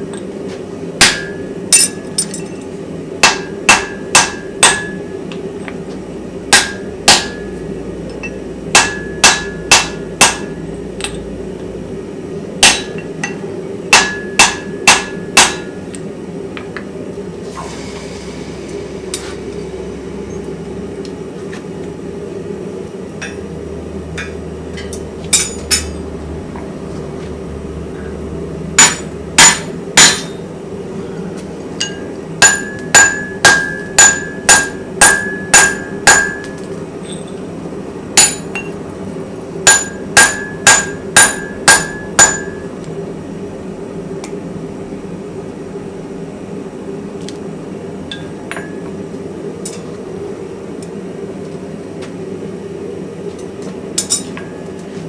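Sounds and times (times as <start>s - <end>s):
steady low hum: 0.0s - 55.0s
hammer ringing on anvil: 1.0s - 2.6s, 3.2s - 5.2s, 6.5s - 7.6s, 8.2s - 11.2s, 12.6s - 15.8s, 28.8s - 30.4s, 31.8s - 36.7s, 38.2s - 38.8s, 39.6s - 42.7s.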